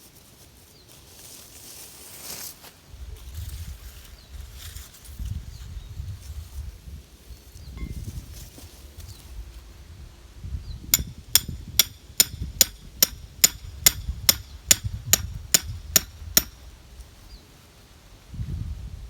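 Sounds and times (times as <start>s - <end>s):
sledgehammer clanking on metal stake: 11.0s - 16.6s.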